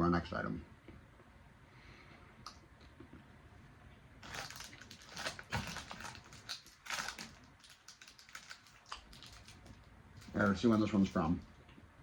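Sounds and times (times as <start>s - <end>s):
candy wrapper crinkling: 4.2s - 11.5s.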